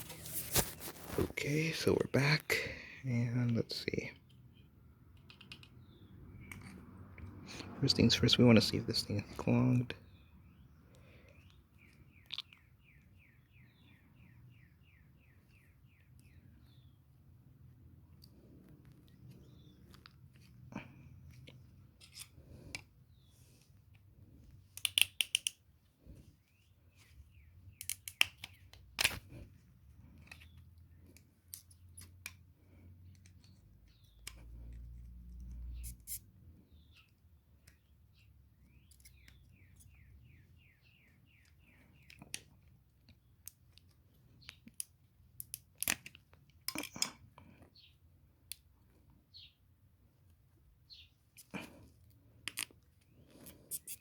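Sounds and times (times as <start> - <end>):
tools clicking and scraping: 18.2 - 22.9, 24.7 - 25.6, 51.3 - 54.0.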